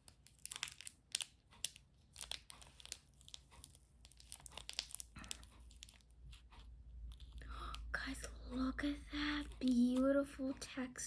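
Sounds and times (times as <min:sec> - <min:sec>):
packaging crumpled and torn: 0:00.0 - 0:06.0.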